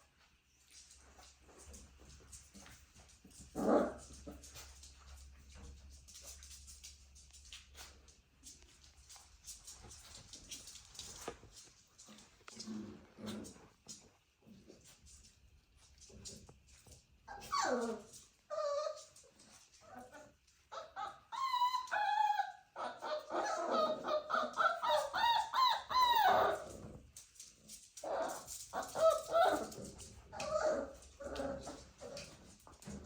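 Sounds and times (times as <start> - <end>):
puppies whining and yelping: 17.3 - 26.8, 28.0 - 32.3.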